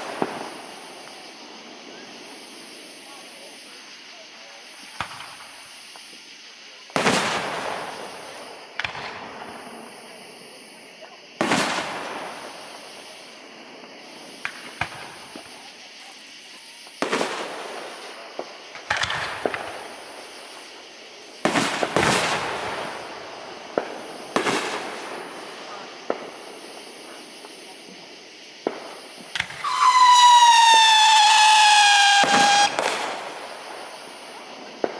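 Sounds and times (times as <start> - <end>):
sharp firework pops and cracks: 0.0 - 1.3, 4.9 - 6.2, 6.9 - 9.7, 14.4 - 15.6, 16.9 - 20.8, 21.4 - 27.6, 28.6 - 34.9
firework booms with rolling echo: 0.0 - 3.9, 4.6 - 6.2, 6.9 - 15.7, 17.0 - 34.9.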